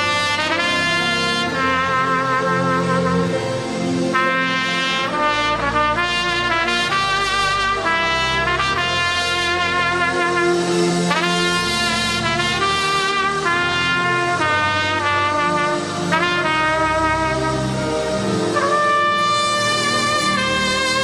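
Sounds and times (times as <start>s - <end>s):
solo trumpet melody: 0.0s - 21.0s
sustained low chords: 0.0s - 21.0s.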